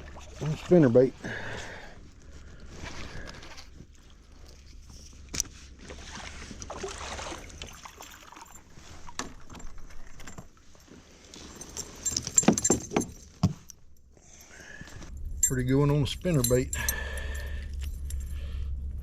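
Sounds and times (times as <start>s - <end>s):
handling clicks and rustles: 8.5s - 18.8s
metallic jangling: 11.4s - 18.8s.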